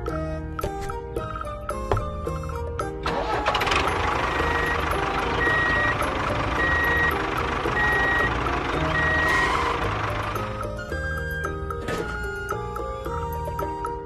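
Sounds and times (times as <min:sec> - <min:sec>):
engine running: 0:03.0 - 0:12.4
reversing alarm beeping: 0:04.1 - 0:10.6.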